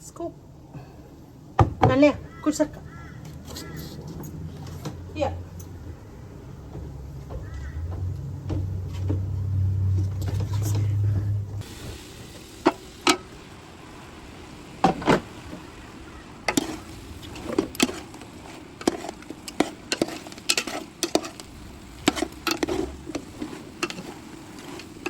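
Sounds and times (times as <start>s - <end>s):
low hum: 4.2s - 25.0s
faint steady hiss: 10.6s - 25.0s
utensil scraping cooking pan: 14.8s - 25.0s.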